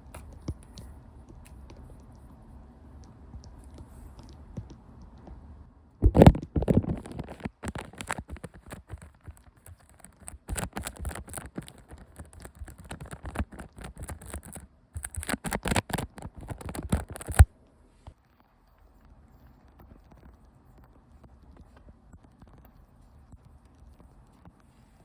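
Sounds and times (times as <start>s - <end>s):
makeup tools rubbing and tapping: 6.0s - 17.4s.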